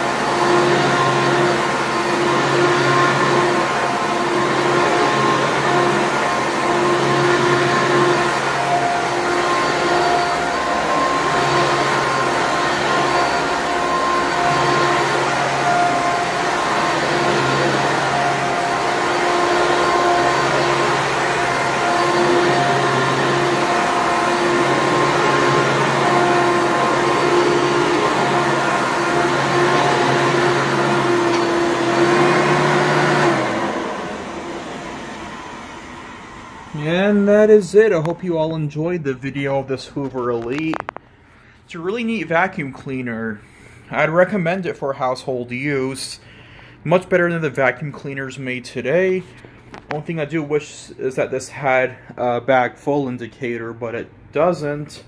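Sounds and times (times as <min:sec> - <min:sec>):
vacuum motor winding down: 0:00.0 - 0:37.3
vacuum cleaner running: 0:00.0 - 0:37.7.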